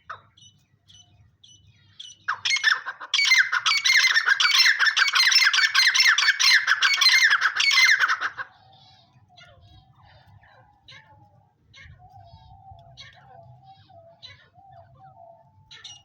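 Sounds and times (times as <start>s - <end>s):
partridge calling: 0.0s - 16.0s.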